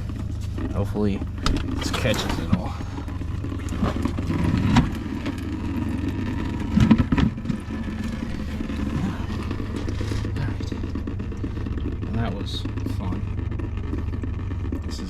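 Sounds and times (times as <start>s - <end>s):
low rumble: 0.0s - 15.0s.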